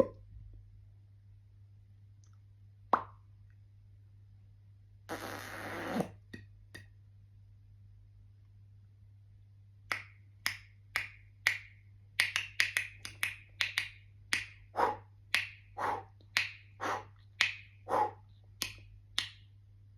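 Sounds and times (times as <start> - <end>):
faint steady hum: 0.0 - 19.9
beatboxing mouth percussion: 5.1 - 6.9.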